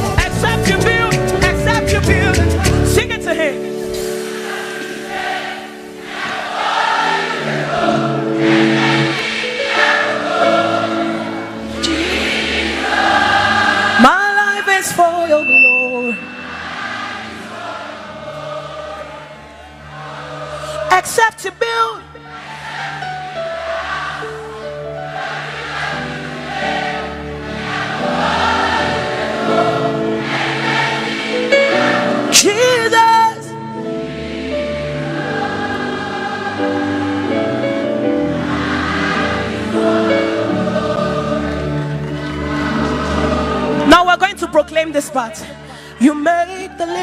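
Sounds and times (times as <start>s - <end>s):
live band playing: 0.0s - 6.0s, 13.0s - 17.3s
gospel choir singing with music: 0.0s - 47.0s.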